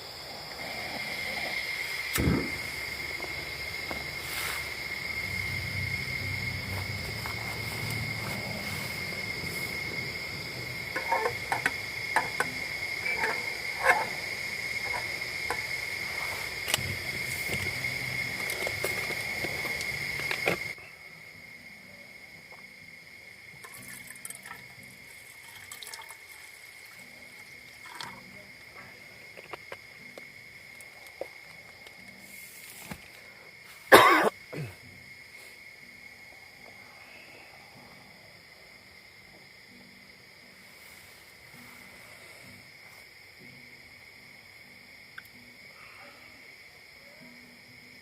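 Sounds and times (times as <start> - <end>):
night insects chirring: 0.0 - 48.0
scattered clicks and knocks: 11.0 - 14.2.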